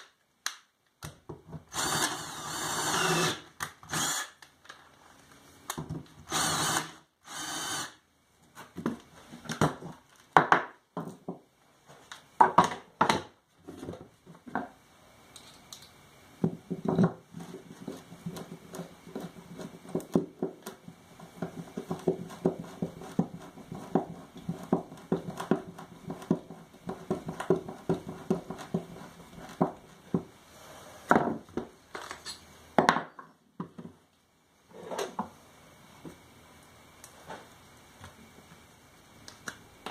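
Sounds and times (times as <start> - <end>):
drill cutting into wood: 1.7 - 4.4, 6.3 - 8.0.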